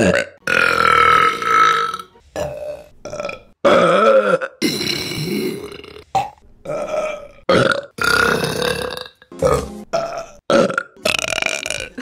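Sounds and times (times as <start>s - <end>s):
women burping: 3.1s - 5.9s, 6.6s - 12.0s.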